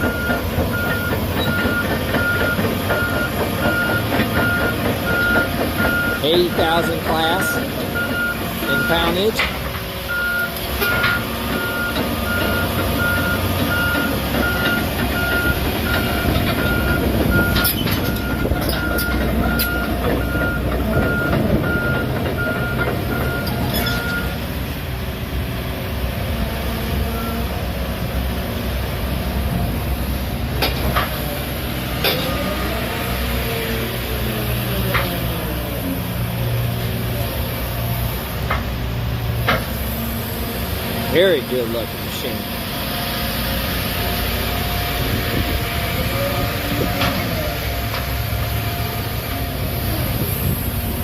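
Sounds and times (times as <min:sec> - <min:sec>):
backup alarm beeping: 0:00.0 - 0:09.3, 0:10.1 - 0:24.4
heavy diesel equipment running: 0:00.0 - 0:51.0.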